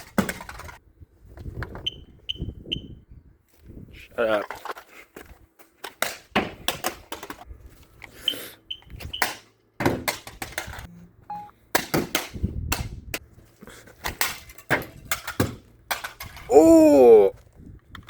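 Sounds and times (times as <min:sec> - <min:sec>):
short high beeps: 0:11.3 - 0:11.5.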